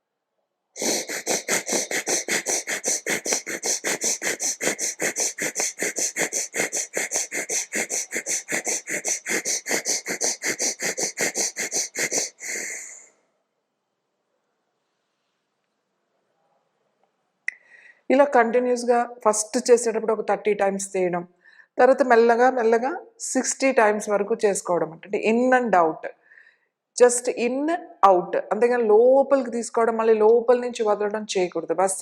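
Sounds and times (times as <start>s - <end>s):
forceful breathing through nose: 0.8s - 13.1s.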